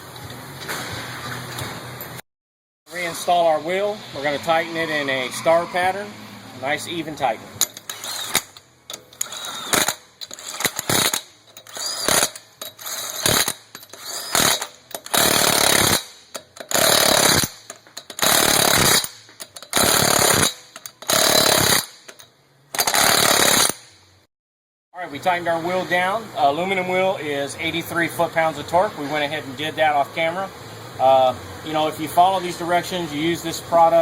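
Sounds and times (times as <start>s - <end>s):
impact wrench bursts: 7.6s - 24.1s.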